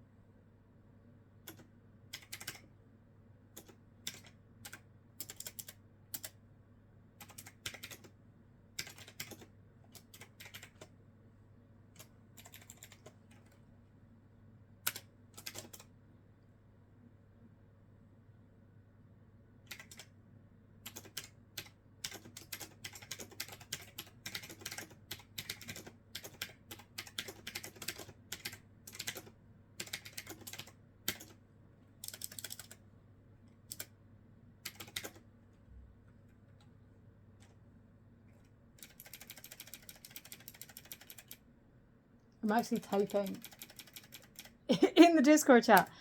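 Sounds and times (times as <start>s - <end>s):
clicky keyboard typing: 1.4s - 2.7s, 3.6s - 6.4s, 7.2s - 8.2s, 8.8s - 10.9s, 12.0s - 13.6s, 14.8s - 15.9s, 19.7s - 20.2s, 20.8s - 31.4s, 32.0s - 32.8s, 33.6s - 34.0s, 34.6s - 35.3s, 38.4s - 41.4s, 42.5s - 44.6s, 45.7s - 46.0s.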